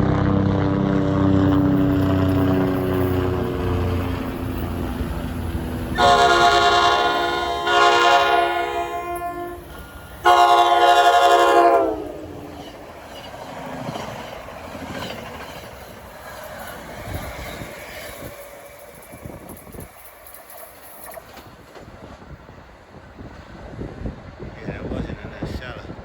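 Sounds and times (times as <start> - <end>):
train horn blasts: 0.0 - 12.8
train running noise: 0.0 - 26.0.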